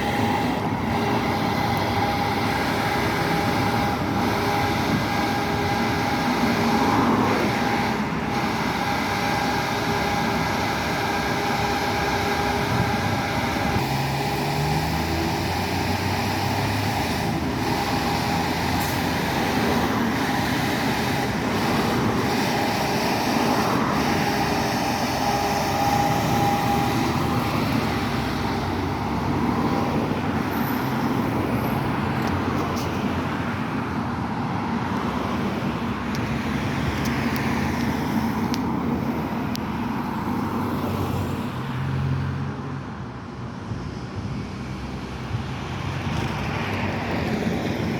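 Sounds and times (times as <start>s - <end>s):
high-pitched whine: 0.0s - 31.9s
bus engine running: 0.0s - 41.8s, 42.5s - 47.9s.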